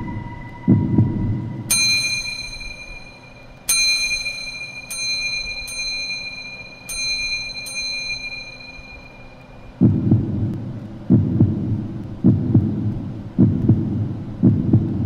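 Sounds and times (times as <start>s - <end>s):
faint low hum: 0.0s - 15.0s
bell-like chime ringing: 1.7s - 9.7s.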